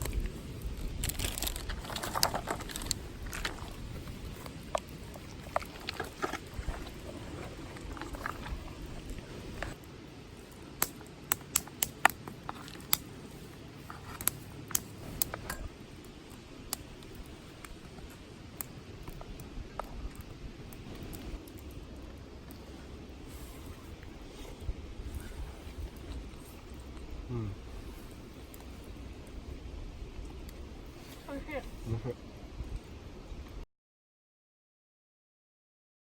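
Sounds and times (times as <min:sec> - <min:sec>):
low rumble: 0:13.2 - 0:33.6.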